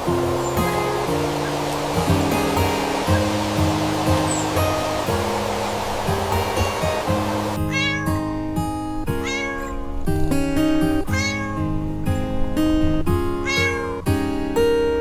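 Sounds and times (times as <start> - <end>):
gentle guitar music: 0.0 - 15.0
cat meowing: 7.6 - 8.2, 9.2 - 9.8, 11.1 - 11.7, 13.4 - 14.0.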